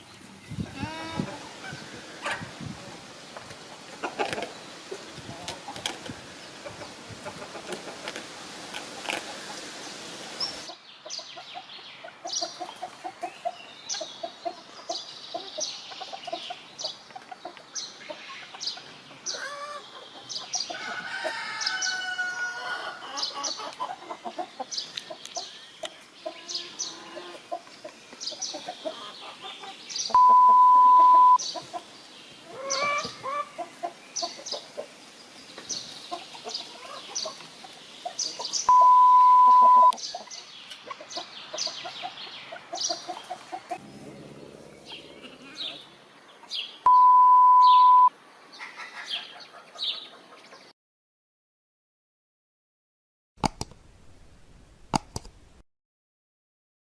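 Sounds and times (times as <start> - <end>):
chickens clucking and chirping: 0.4 - 9.7, 10.4 - 46.9, 47.6 - 50.7
rooster crowing: 20.8 - 23.0
loud steady beep: 30.2 - 31.4, 38.7 - 40.0, 46.9 - 48.1.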